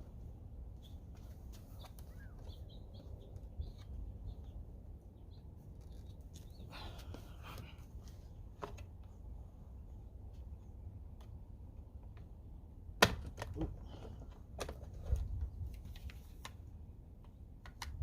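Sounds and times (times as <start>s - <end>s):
low steady rumble: 0.0s - 18.0s
small birds chirping: 0.7s - 8.5s.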